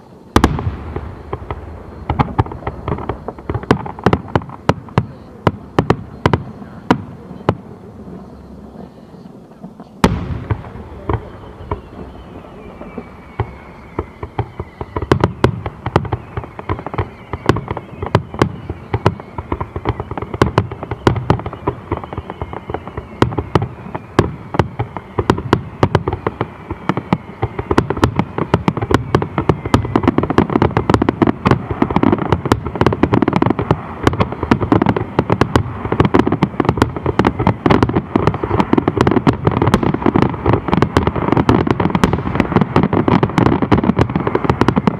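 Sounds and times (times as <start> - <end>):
faint falling whistles: 0.0 - 3.6, 10.0 - 33.6
distant fireworks booming: 0.0 - 44.9.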